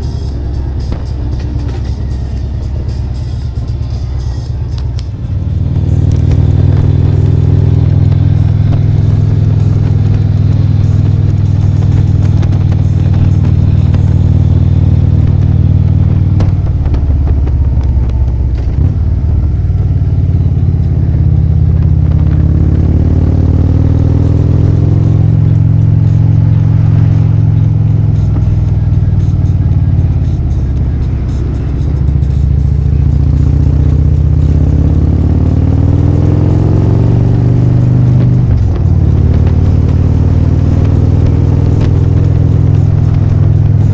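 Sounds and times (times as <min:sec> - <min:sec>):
car low drone: 0:00.0 - 0:43.9.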